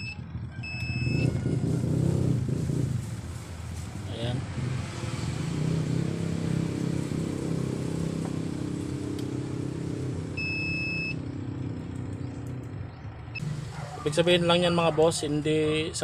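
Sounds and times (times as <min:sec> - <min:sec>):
high electronic beep: 0:00.0 - 0:01.4, 0:10.4 - 0:11.2
low mechanical drone: 0:00.0 - 0:16.0.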